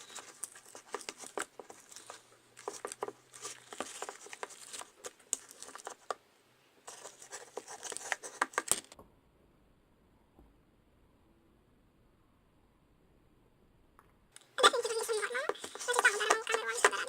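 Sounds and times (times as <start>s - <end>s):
sticky slime stirring squelches: 0.0s - 6.2s, 14.6s - 17.0s.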